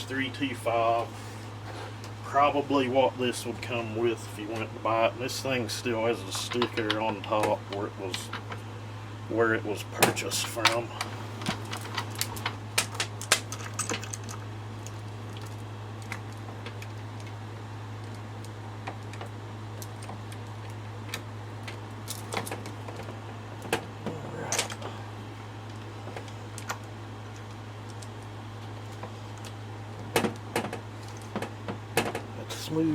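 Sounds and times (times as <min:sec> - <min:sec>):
steady low hum: 0:00.0 - 0:32.9.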